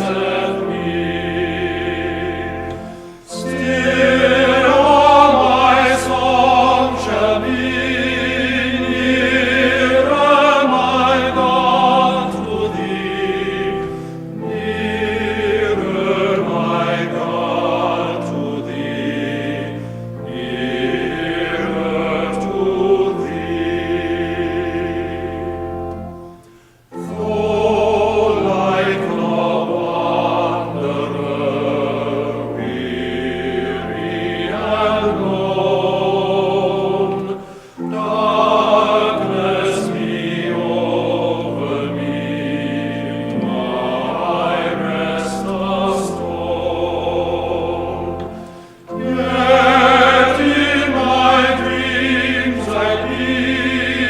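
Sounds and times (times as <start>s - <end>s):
choir singing: 0.0s - 54.0s.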